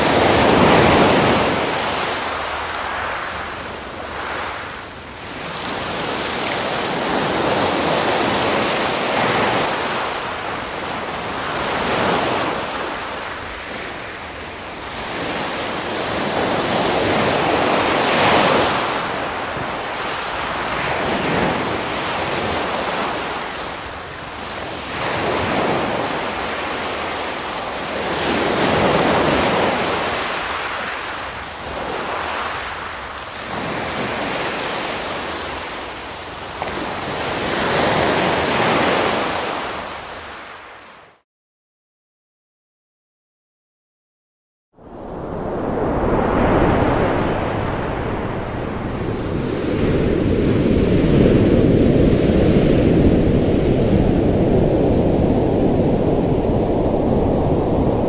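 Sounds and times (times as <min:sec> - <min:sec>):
waves breaking: 0:00.0 - 0:14.0, 0:45.2 - 0:58.0.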